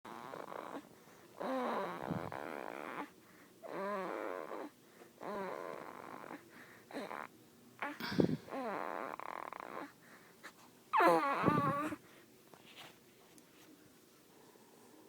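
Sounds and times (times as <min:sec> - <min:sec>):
snoring: 0:00.1 - 0:10.0, 0:11.0 - 0:12.0.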